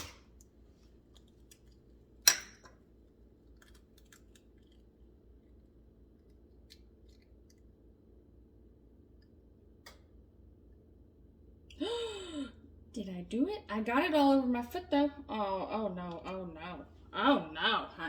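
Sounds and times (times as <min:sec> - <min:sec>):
egg cracking on bowl rim: 0:01.1 - 0:05.6.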